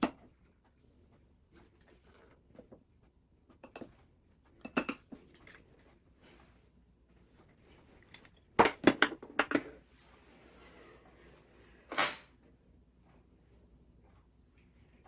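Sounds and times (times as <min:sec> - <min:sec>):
kitchenware clattering: 0:04.6 - 0:05.7, 0:08.2 - 0:09.8, 0:11.9 - 0:12.4.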